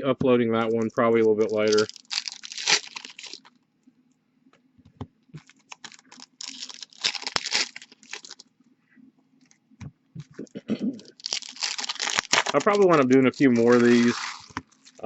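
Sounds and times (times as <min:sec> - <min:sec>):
plastic wrapper crinkling and tearing: 0:00.6 - 0:03.6, 0:05.4 - 0:08.5, 0:11.0 - 0:15.0.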